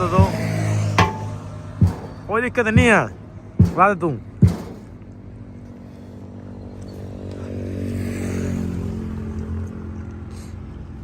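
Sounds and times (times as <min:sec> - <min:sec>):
vehicle engine running: 0:00.0 - 0:07.4.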